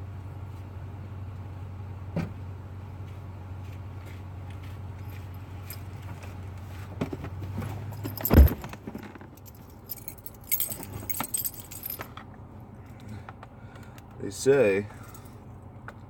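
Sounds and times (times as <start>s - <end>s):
keys jangling: 5.1s - 5.9s, 7.9s - 12.2s
heavy thump: 8.0s - 8.9s.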